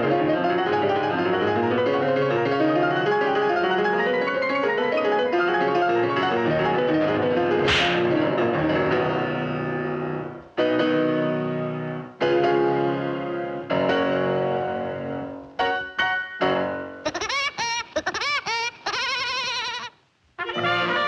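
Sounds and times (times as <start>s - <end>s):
piano playing loud chords: 0.0s - 17.0s
crash-like splash: 7.7s - 8.1s.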